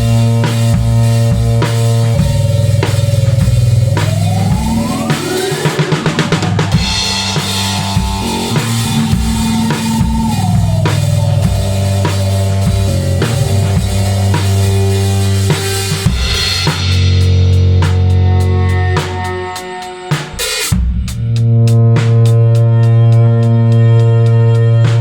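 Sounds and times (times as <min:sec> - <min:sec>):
band playing loud live music: 0:00.0 - 0:20.8
drum kit beat: 0:00.0 - 0:25.0
sustained pitched instrument tones: 0:02.0 - 0:15.0.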